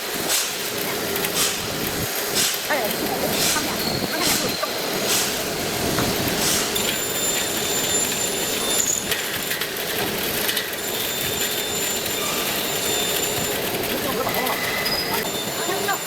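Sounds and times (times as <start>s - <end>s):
thin high-pitched whines: 10.8s - 16.0s.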